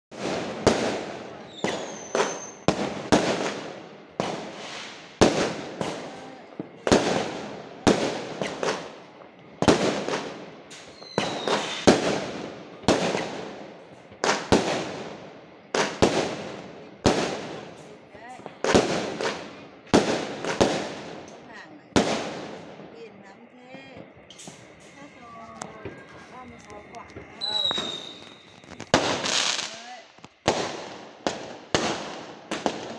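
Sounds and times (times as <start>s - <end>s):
fireworks bangs: 0.1s - 32.9s
firework whistle: 0.2s - 2.7s, 4.4s - 6.1s, 8.0s - 8.8s, 9.7s - 12.2s, 24.3s - 30.8s.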